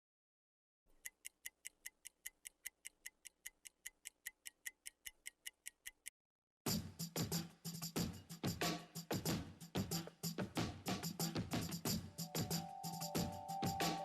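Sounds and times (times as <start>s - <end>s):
clock ticking fast: 1.0s - 6.1s
music with drums: 6.7s - 14.0s.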